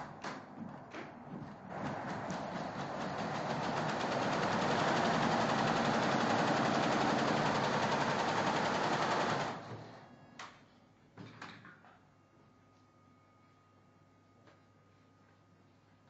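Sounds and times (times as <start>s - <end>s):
embroidery machine stitching: 1.7s - 10.0s.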